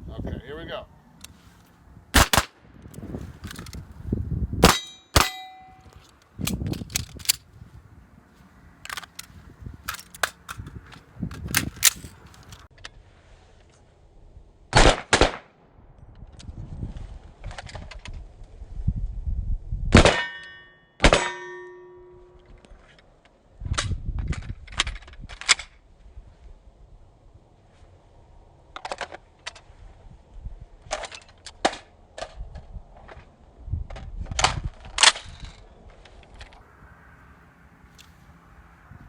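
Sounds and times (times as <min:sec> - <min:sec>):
gunshots: 0:02.2 - 0:02.6, 0:04.6 - 0:05.6
metallic clicks of gun handling: 0:02.2 - 0:03.9, 0:04.6 - 0:07.5, 0:08.8 - 0:12.7
ringing tone: 0:04.8 - 0:06.0.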